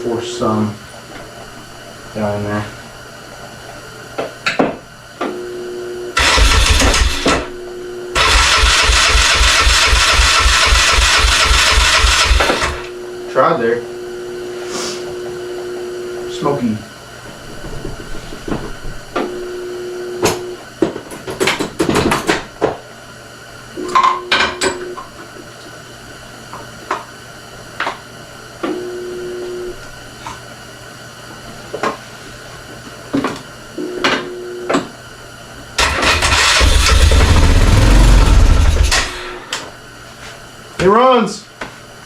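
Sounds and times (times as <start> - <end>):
engine starting attempts with pops: 6.2 - 7.5, 8.2 - 12.8, 35.8 - 39.2
engine running loudly: 6.2 - 13.0, 35.8 - 39.3.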